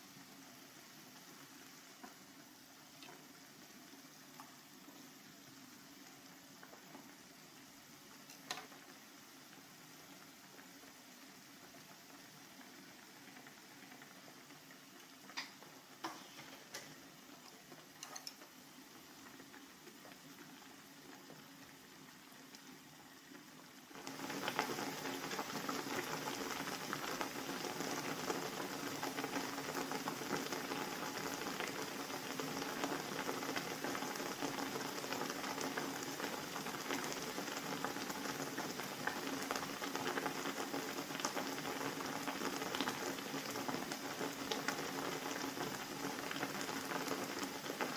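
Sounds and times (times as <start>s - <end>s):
water boiling and bubbling: 0.0s - 47.9s
stove clicks: 18.0s - 18.5s.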